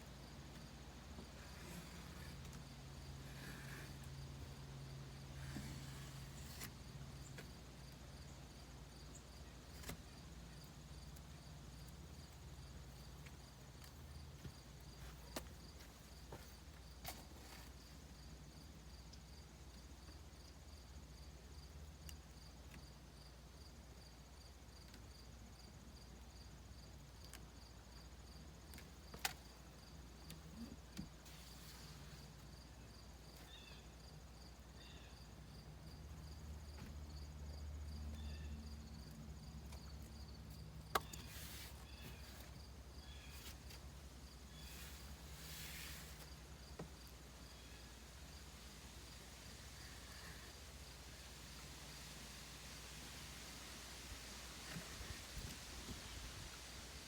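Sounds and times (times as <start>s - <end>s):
crickets chirping: 0.0s - 54.4s.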